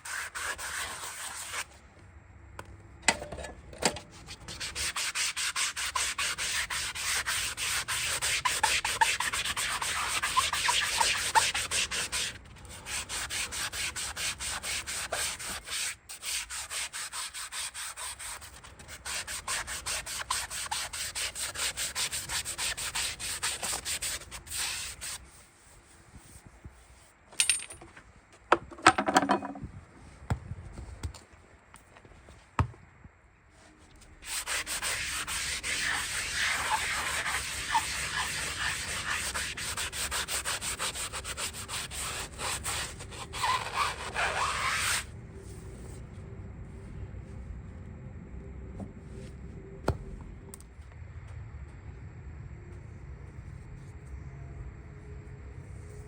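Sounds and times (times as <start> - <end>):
rasp scraping a hoof: 0.0 - 1.6, 4.0 - 25.4, 34.2 - 45.1.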